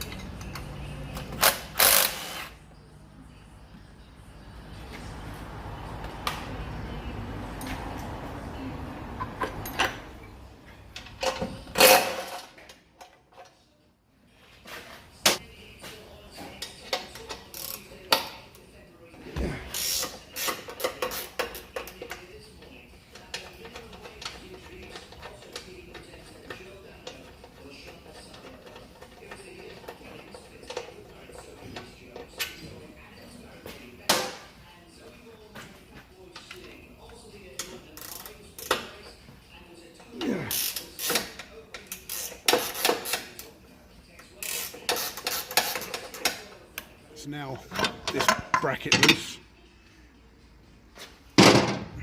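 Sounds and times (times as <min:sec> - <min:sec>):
ratchet clicking: 0:00.0 - 0:02.6, 0:40.5 - 0:43.4, 0:44.4 - 0:46.2.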